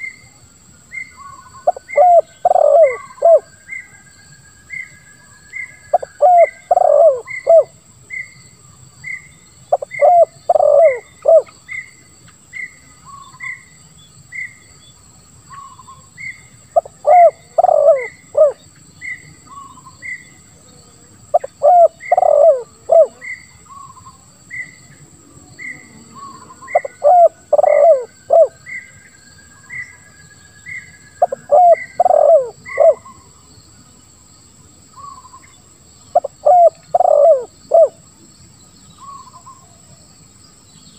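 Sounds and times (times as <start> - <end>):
dove cooing deeply: 1.2 - 4.0, 5.6 - 7.8, 9.7 - 11.5, 16.7 - 24.7, 25.4 - 28.9, 31.1 - 33.3, 36.1 - 38.0.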